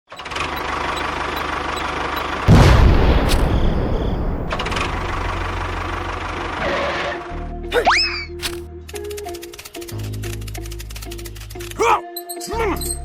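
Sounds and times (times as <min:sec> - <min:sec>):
engine running with low rumble: 0:00.2 - 0:07.5
loud boom: 0:02.5 - 0:06.5.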